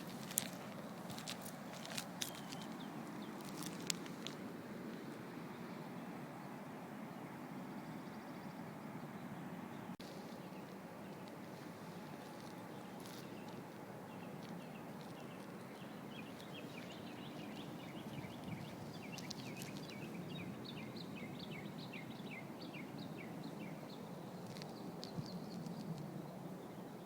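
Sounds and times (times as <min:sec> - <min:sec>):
bird chirping: 0:01.7 - 0:03.8, 0:12.7 - 0:26.0.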